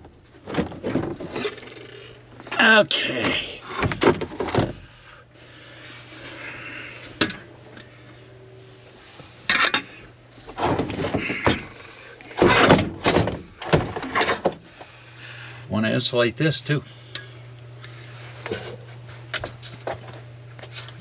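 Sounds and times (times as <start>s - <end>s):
clunks thumps and scrapes: 0.3s - 1.8s, 2.4s - 4.9s, 9.5s - 14.9s.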